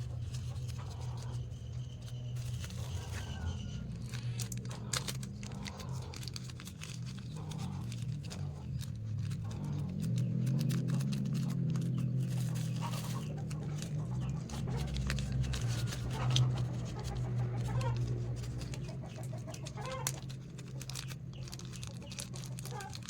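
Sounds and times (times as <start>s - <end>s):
steady low hum: 0.0s - 19.6s.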